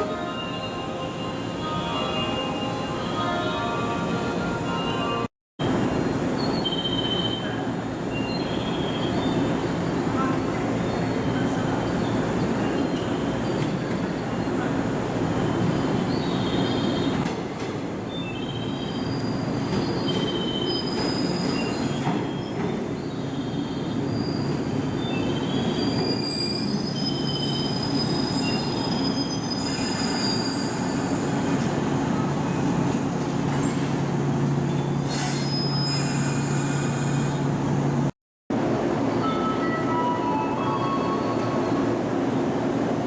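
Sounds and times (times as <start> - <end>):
train wheels squealing: 18.5 - 31.6, 34.7 - 37.4.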